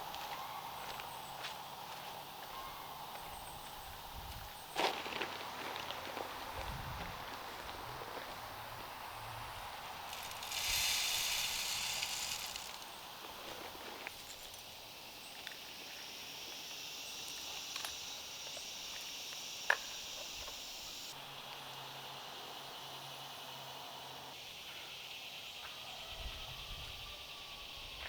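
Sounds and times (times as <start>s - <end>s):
loud hiss: 7.7s - 15.0s, 16.8s - 21.2s
high-pitched insect drone: 8.4s - 13.3s, 15.8s - 24.5s.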